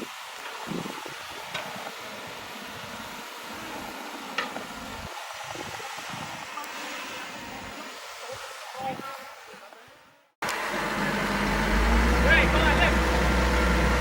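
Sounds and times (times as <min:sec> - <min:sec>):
bulldozer rumbling: 0:10.4 - 0:14.0.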